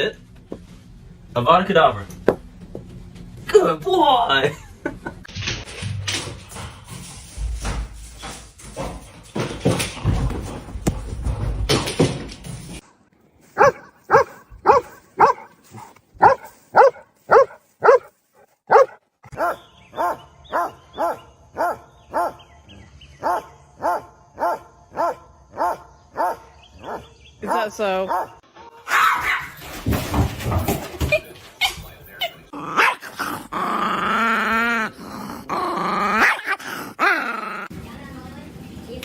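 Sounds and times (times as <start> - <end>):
dog barking: 13.6 - 18.1, 18.7 - 22.4, 23.2 - 29.6, 36.2 - 37.1.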